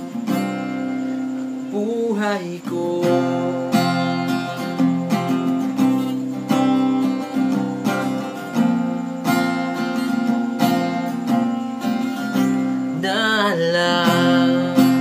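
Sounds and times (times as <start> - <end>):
acoustic guitar strumming chords: 0.0 - 15.0
person singing: 1.7 - 4.3, 12.9 - 15.0.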